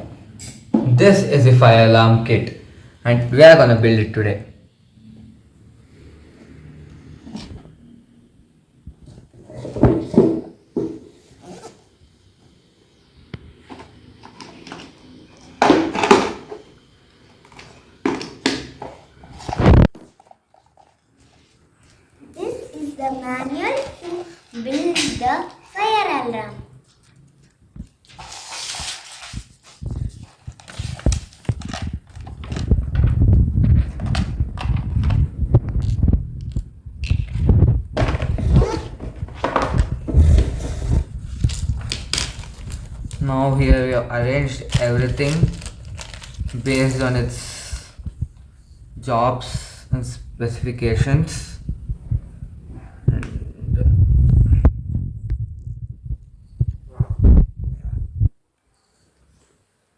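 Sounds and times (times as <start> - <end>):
box and parts rustling and knocking: 9.4 - 11.2, 15.5 - 16.7, 29.9 - 43.2, 44.7 - 47.0.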